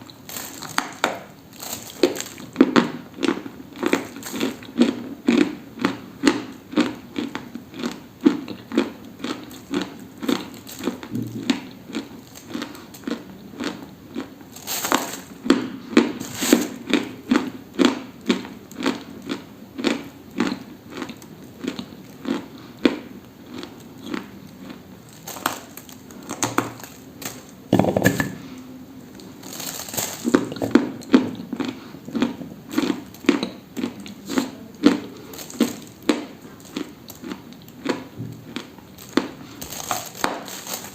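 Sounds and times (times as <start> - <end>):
dry crunching: 29.4 - 30.8.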